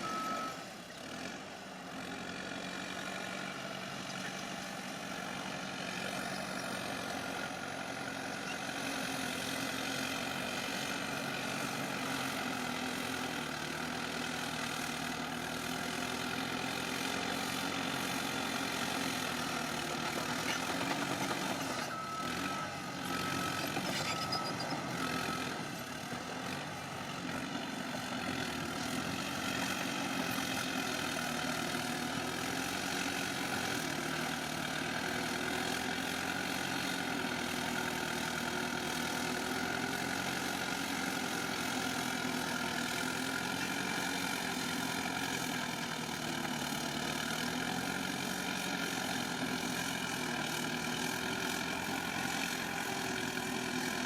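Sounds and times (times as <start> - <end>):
short beeps: 0.0 - 0.7, 21.7 - 25.4
bulldozer diesel engine running: 0.0 - 54.0.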